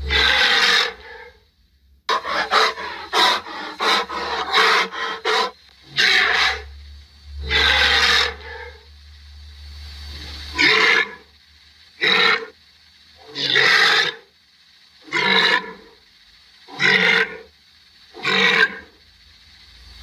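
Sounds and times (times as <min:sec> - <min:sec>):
rhinoceros calling: 0:00.0 - 0:01.4, 0:02.1 - 0:06.8, 0:07.4 - 0:08.9.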